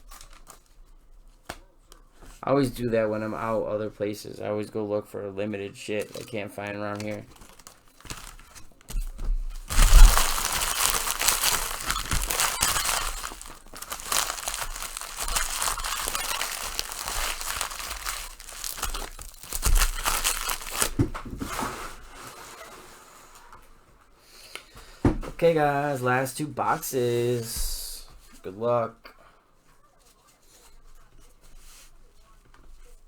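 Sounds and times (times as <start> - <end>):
plastic wrappers crinkling: 0.0 - 2.3, 5.8 - 21.5.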